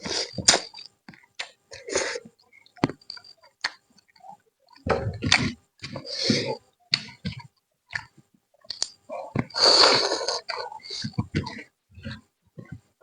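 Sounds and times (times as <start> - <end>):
person chewing: 0.0 - 8.1.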